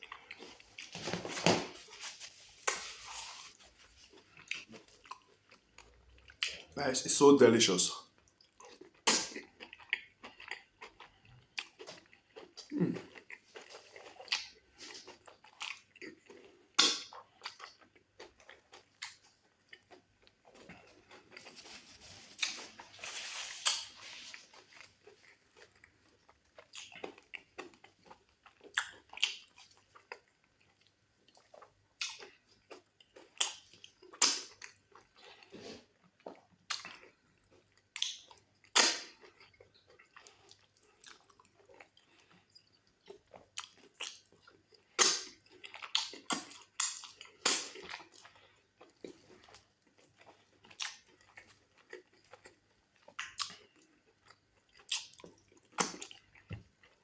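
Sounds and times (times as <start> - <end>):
wet chewing and smacking: 0.0 - 0.9, 1.9 - 6.8, 8.1 - 57.0
slurping or rustling: 1.7 - 4.3, 20.8 - 25.3.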